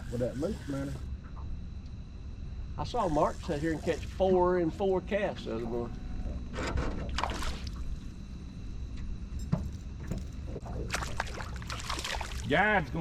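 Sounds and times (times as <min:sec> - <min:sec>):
steady low hum: 0:00.0 - 0:13.0
water splashing against boat: 0:06.8 - 0:08.0, 0:10.0 - 0:12.7.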